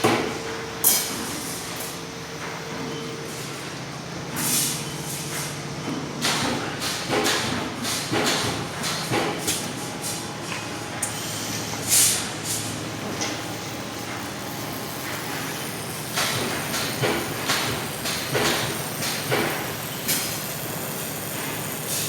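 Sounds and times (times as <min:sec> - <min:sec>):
steady machinery noise: 0:00.0 - 0:22.0
loud hiss of air: 0:11.2 - 0:12.7.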